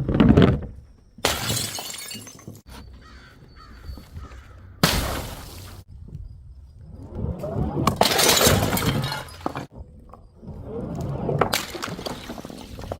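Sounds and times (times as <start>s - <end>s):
glass bottle smashing: 1.2s - 2.6s, 8.0s - 9.7s.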